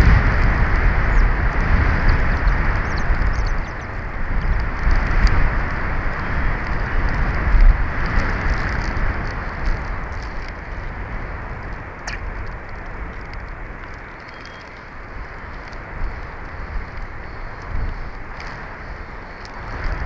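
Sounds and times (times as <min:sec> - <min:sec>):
wind buffeting microphone: 0:00.0 - 0:20.0.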